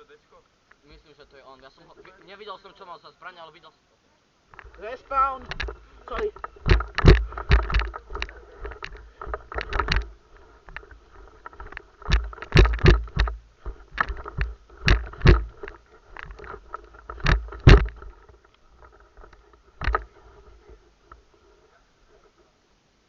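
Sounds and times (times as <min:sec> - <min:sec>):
rustle of gear: 0:04.5 - 0:22.6
heavy footsteps thumping: 0:04.6 - 0:18.2.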